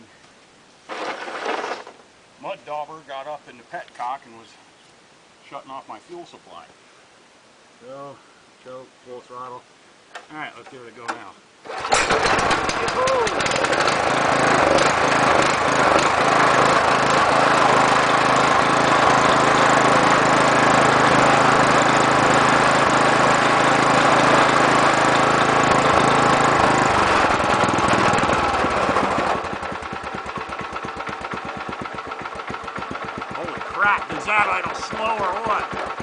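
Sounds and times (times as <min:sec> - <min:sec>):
small engine running: 0:11.7 - 0:36.0.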